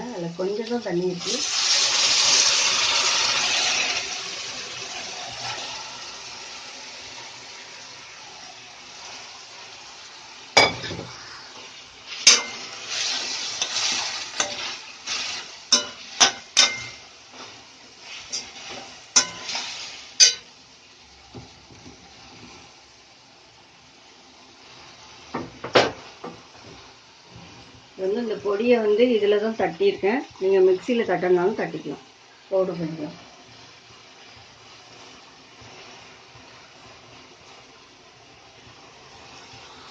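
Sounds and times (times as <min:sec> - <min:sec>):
meat sizzling in oil: 0:00.0 - 0:39.9
metal spoon scraping a pan: 0:12.1 - 0:17.0, 0:18.0 - 0:20.5.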